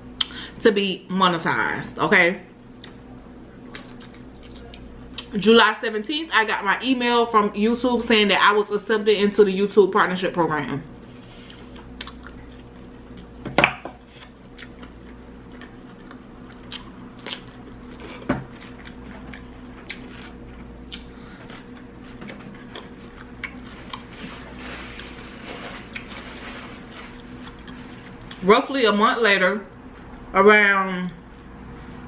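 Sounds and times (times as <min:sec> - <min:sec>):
wet chewing and mouth smacks: 0:03.7 - 0:05.3, 0:11.4 - 0:13.3, 0:14.2 - 0:24.1.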